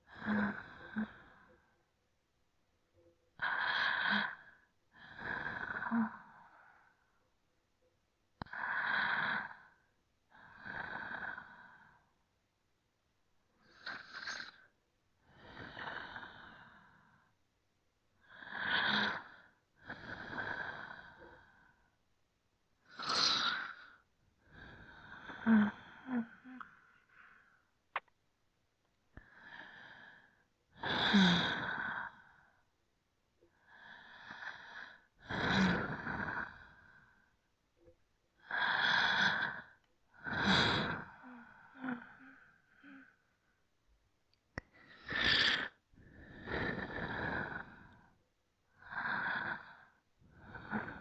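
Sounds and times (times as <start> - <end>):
slow deep breathing: 22.8 - 27.8, 38.4 - 43.7, 44.6 - 51.0.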